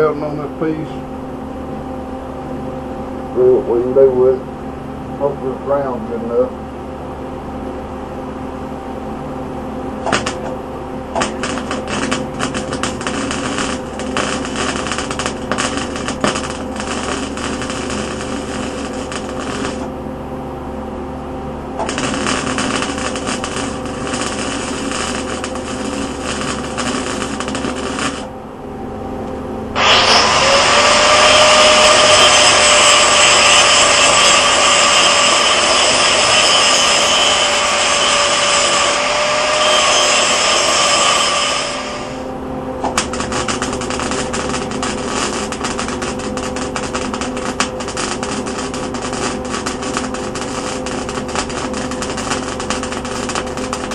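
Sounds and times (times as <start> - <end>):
loud steady tonal sound: 0.0 - 53.9
welder arc crackling: 10.0 - 20.0, 21.7 - 28.3, 29.2 - 53.9.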